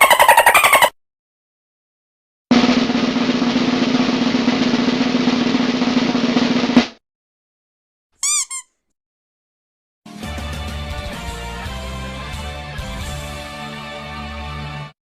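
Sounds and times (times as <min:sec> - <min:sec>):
high squeaky chirps: 0:00.0 - 0:01.0, 0:08.2 - 0:08.8
snare drum roll: 0:02.5 - 0:07.0.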